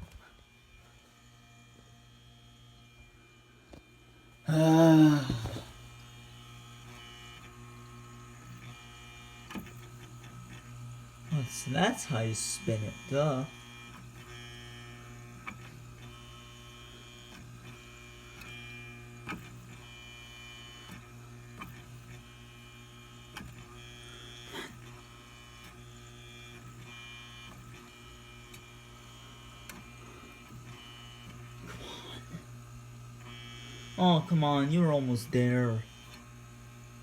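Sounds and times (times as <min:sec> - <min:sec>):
fan motor humming: 0:04.5 - 0:06.3, 0:11.1 - 0:13.8.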